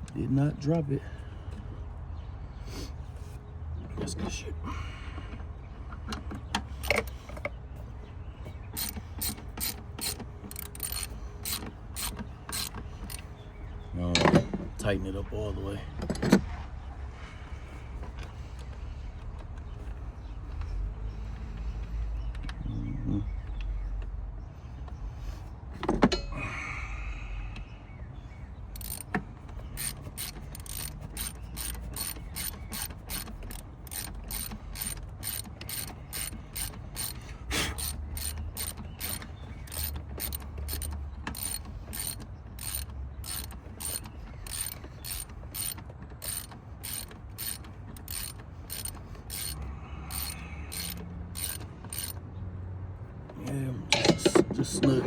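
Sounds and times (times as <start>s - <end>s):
socket ratchet clicking: 8.8s - 13.2s, 28.8s - 37.2s, 37.8s - 52.2s.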